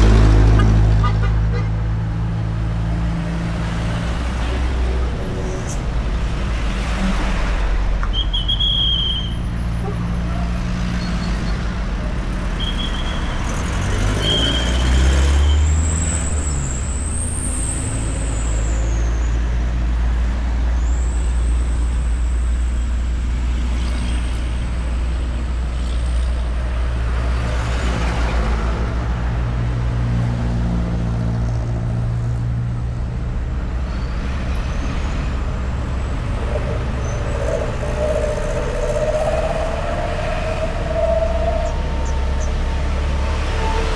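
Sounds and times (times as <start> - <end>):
road traffic rumble: 0.0 - 43.9
heavy vehicle passing: 33.1 - 43.9.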